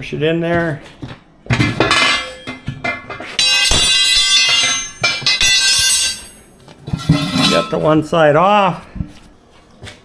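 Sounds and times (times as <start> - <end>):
metallic ringing: 1.9 - 8.0
light metal clinks: 3.4 - 7.9.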